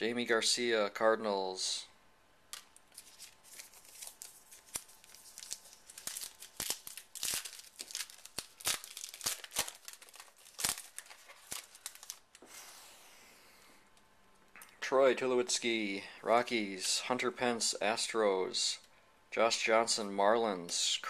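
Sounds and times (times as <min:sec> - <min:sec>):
foil wrapper tearing and crinkling: 0:02.9 - 0:12.4.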